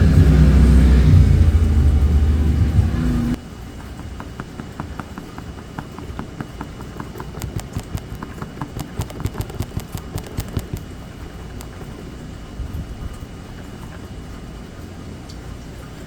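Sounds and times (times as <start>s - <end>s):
steady low rumble: 0.0s - 3.4s
light sharp taps: 4.2s - 10.9s.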